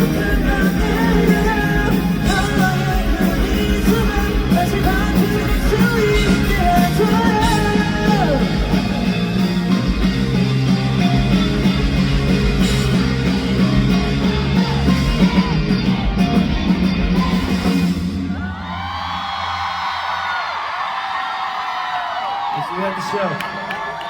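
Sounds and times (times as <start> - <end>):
male lead vocal singing: 0.0 - 9.0
guitar: 0.0 - 18.8
bass: 0.0 - 20.2
drums: 0.0 - 24.0.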